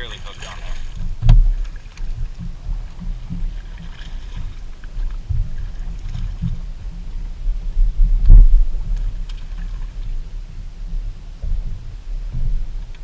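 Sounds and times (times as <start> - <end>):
wind buffeting microphone: 0.0 - 13.0
sharp thump: 1.2 - 1.5.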